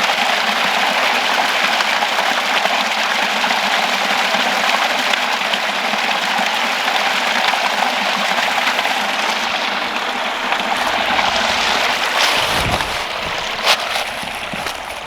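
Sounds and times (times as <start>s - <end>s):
water rushing over rocks: 7.0s - 15.0s.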